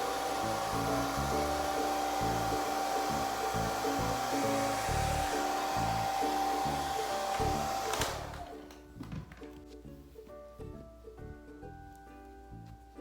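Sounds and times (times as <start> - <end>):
hair dryer running: 0.0 - 8.8
background music: 0.0 - 13.0.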